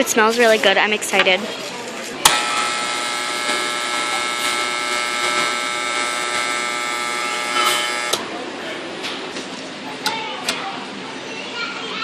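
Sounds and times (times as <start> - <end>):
steady mechanical whine: 2.3 - 8.3.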